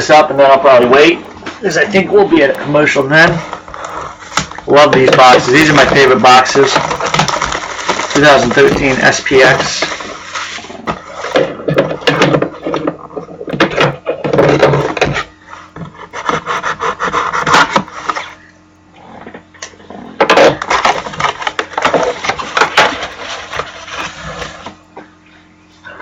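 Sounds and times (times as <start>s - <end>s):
cardboard and wrapping tearing: 6.7s - 10.8s.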